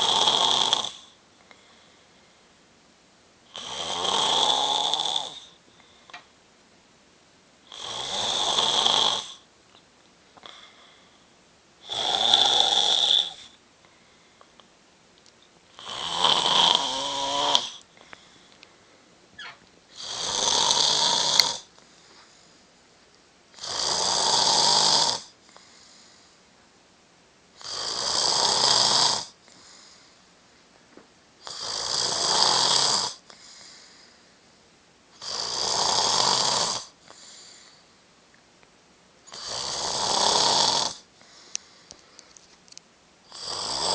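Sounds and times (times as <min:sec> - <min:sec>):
man snoring loudly: 0:00.0 - 0:01.2, 0:03.5 - 0:05.6, 0:07.7 - 0:09.4, 0:11.8 - 0:13.5, 0:15.7 - 0:17.8, 0:19.9 - 0:21.7, 0:23.6 - 0:25.4, 0:27.6 - 0:29.4, 0:31.4 - 0:33.2, 0:35.2 - 0:37.0, 0:39.3 - 0:41.1, 0:43.3 - 0:43.9
faint breaths: 0:01.0 - 0:02.6, 0:05.4 - 0:06.4, 0:10.4 - 0:11.5, 0:13.3 - 0:14.7, 0:17.2 - 0:20.0, 0:21.3 - 0:23.0, 0:25.3 - 0:26.6, 0:29.4 - 0:30.9, 0:33.2 - 0:34.8, 0:36.9 - 0:38.3, 0:41.0 - 0:42.8.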